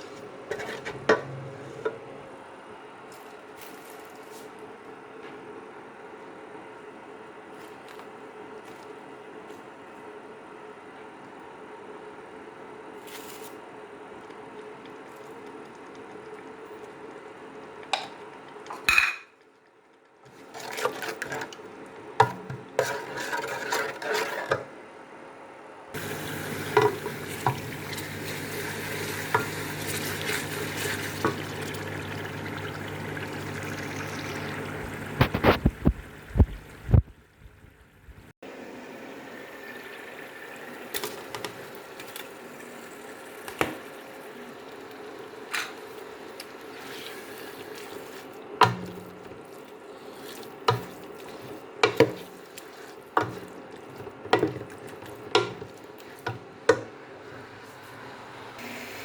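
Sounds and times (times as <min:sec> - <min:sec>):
spoon stirring and scraping pot: 0:00.0 - 0:02.0, 0:20.3 - 0:21.6, 0:22.2 - 0:24.7, 0:45.5 - 0:57.8
food sizzling: 0:26.0 - 0:37.1.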